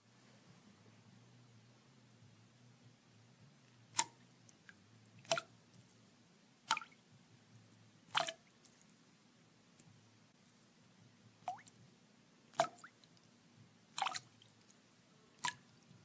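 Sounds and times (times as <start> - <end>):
water drops dripping: 4.0 - 5.5, 6.7 - 7.0, 12.5 - 13.2, 15.4 - 15.7.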